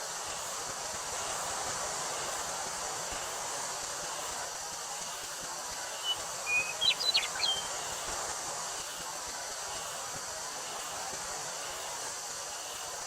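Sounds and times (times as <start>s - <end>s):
insect drone: 0.0s - 13.0s
wind through wheat field: 0.0s - 13.0s
bird chirping: 6.0s - 7.8s.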